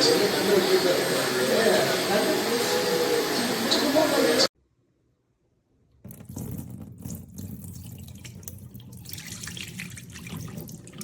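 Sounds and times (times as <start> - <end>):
water running and splashing: 6.4 - 11.0.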